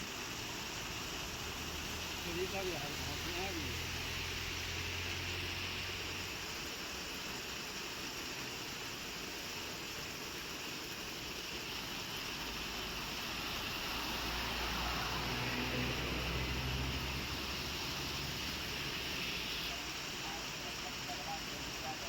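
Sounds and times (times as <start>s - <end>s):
heavy rain pouring: 11.4s - 19.2s.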